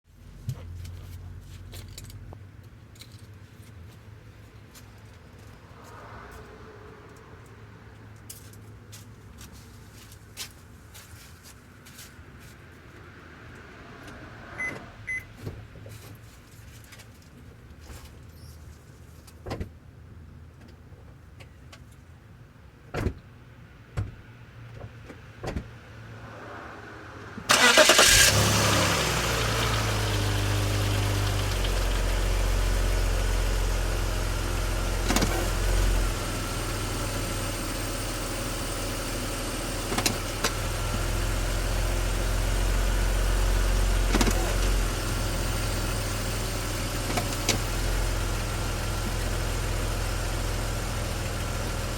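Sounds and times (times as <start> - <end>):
car engine starting and idling: 26.0 - 51.9
knocks over engine idle: 27.5 - 37.2, 42.1 - 49.9.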